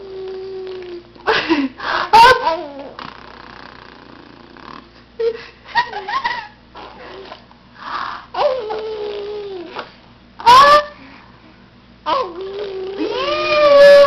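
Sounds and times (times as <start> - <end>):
baby cooing: 2.4 - 3.1, 8.4 - 10.6, 12.1 - 14.0
baby long vocal sound: 8.3 - 11.1, 12.1 - 14.0.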